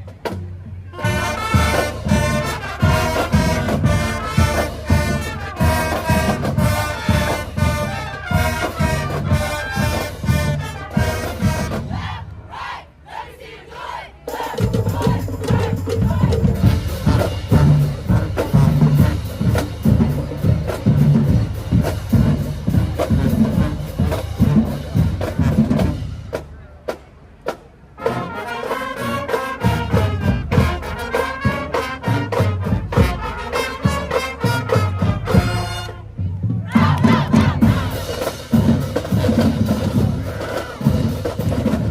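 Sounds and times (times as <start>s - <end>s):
marching drumline: 0.0s - 41.9s
brass horns playing chords: 0.9s - 12.2s, 14.4s - 26.4s, 28.0s - 36.2s.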